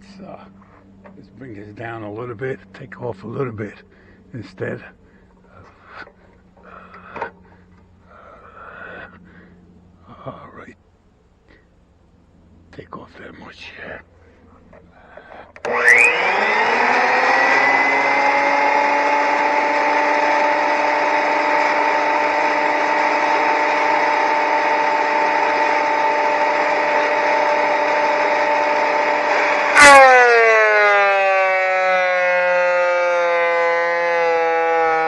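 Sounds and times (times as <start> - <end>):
planer motor whine: 14.7 - 35.0.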